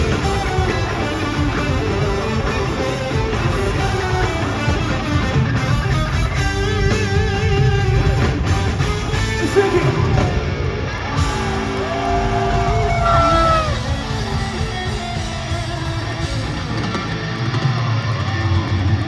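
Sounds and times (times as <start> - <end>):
rock band playing live: 0.0 - 19.0
vibrato electric guitar lead: 11.0 - 17.6.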